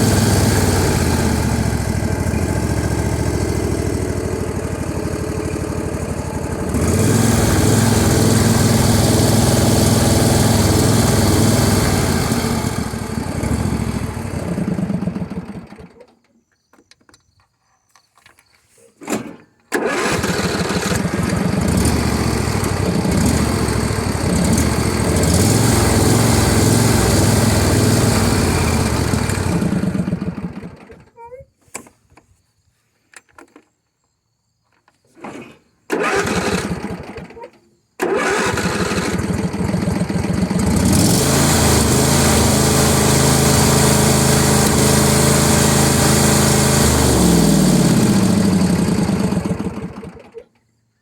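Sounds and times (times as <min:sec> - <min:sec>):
lawn tractor engine running: 0:00.0 - 0:16.0, 0:19.2 - 0:31.0, 0:35.9 - 0:50.4
engine cranking: 0:19.0 - 0:31.0, 0:35.2 - 0:50.4.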